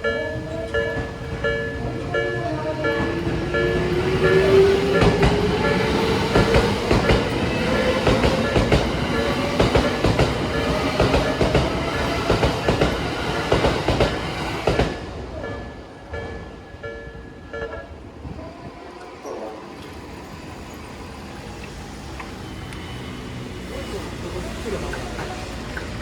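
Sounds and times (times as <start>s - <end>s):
crossing warning bell dinging: 0.0s - 21.7s
wheels clattering over rail joints: 0.1s - 15.3s.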